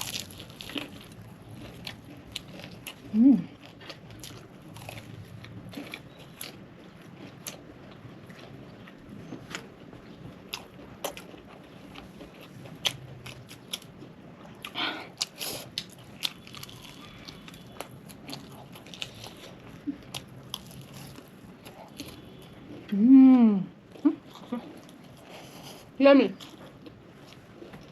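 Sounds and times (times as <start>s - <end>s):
crunching and chewing fried chicken: 0.0s - 23.0s, 23.7s - 27.9s.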